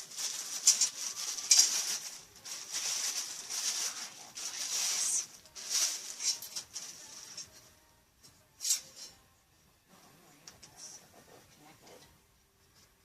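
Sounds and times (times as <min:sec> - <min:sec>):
plastic packaging crinkling: 0:00.0 - 0:07.6.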